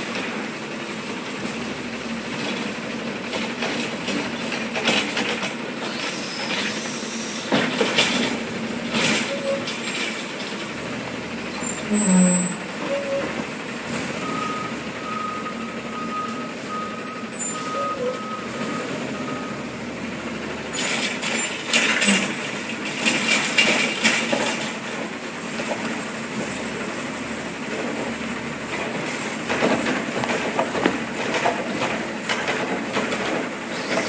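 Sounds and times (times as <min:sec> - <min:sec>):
truck hissing and clatter: 0:00.2 - 0:34.0
truck backup alarm beeping: 0:14.1 - 0:20.8.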